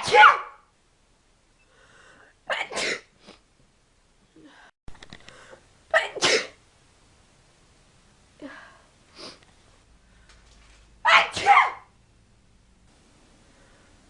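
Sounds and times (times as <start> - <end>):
person sneezing: 2.5 - 3.4, 6.0 - 6.6, 11.1 - 11.9.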